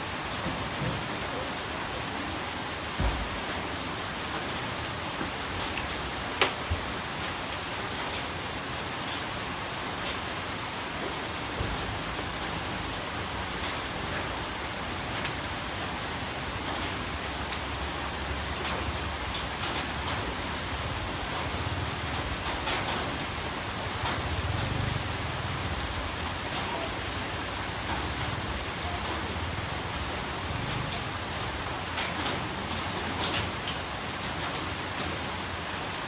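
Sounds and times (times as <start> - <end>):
steady rain falling: 0.0 - 36.0.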